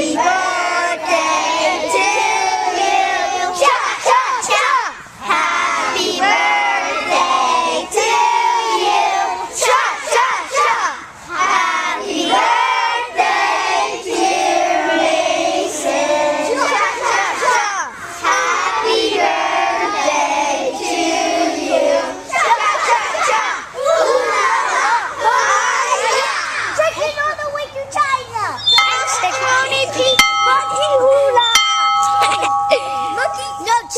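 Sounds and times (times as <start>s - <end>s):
children singing and shouting: 0.0s - 33.9s.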